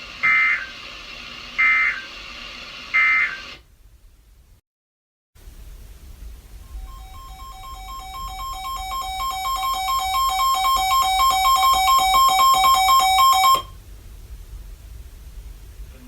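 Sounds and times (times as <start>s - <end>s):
two-pitch alert beeping: 6.7s - 13.7s.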